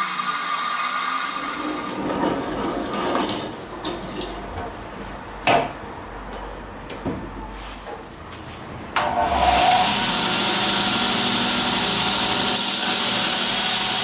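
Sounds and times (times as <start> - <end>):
power tool whine: 9.0 - 14.0.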